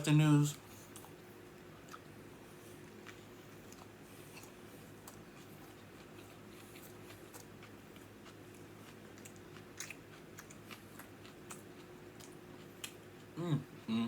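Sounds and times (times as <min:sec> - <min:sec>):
steady low hum: 0:00.0 - 0:14.0
wet chewing smacks: 0:02.8 - 0:13.4.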